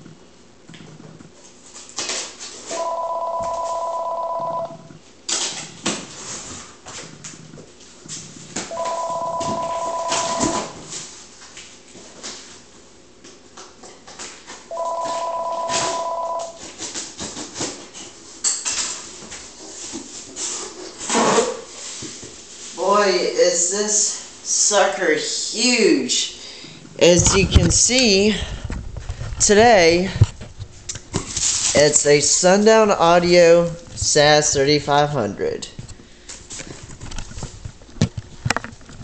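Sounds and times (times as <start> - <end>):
telephone ringing: 2.7 - 5.0, 8.7 - 10.8, 14.7 - 16.6
rustling and clicking handling noises: 35.7 - 39.0.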